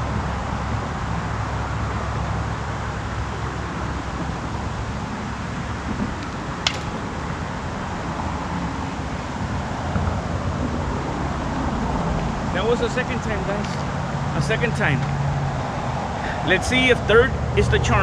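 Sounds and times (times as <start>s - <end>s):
steady rushing noise: 0.0s - 18.0s.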